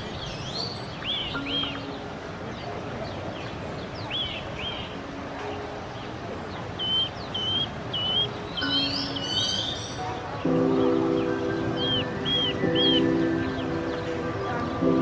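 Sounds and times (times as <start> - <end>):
birds whistling: 0.0 - 2.0, 6.8 - 14.8
background hiss: 0.0 - 15.0.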